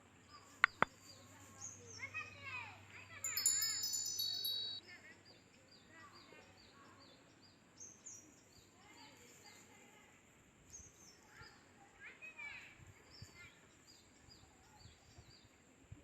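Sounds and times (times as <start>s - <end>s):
bird chirping: 0.6s - 2.1s, 3.2s - 4.8s
fainter lower bird calls: 3.2s - 4.8s.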